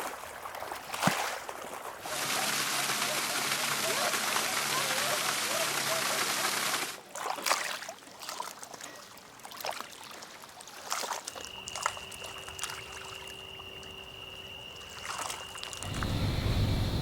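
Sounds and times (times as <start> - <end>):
water trickling and splashing: 0.0 - 17.0
faint high whistle-like tone: 11.1 - 17.0
low rumble: 15.8 - 17.0.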